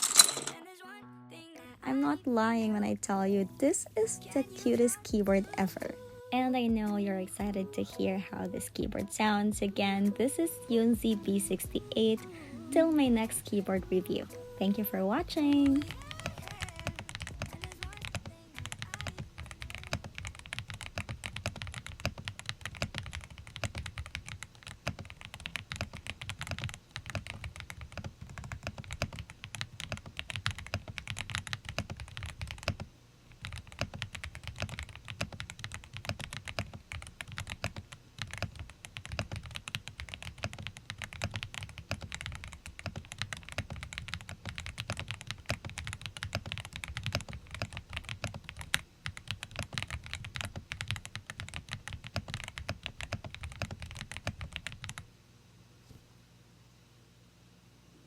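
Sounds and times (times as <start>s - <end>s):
mechanical keyboard typing: 12.8s - 55.0s.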